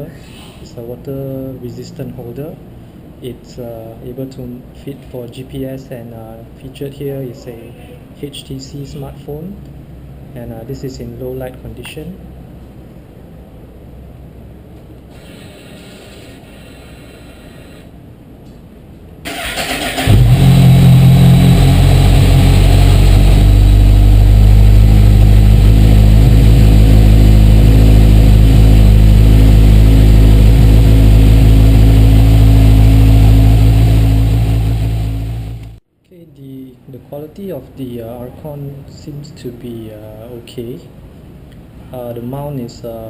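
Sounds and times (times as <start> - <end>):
motorcycle electric starter cranking: 19.3 - 20.4
motorcycle engine idling: 19.9 - 35.8.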